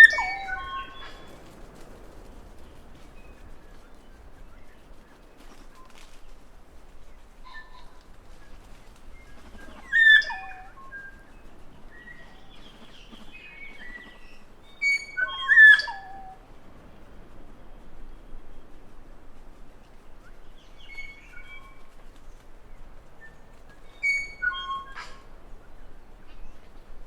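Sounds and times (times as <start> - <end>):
soft bird whistles: 23.2 - 25.2.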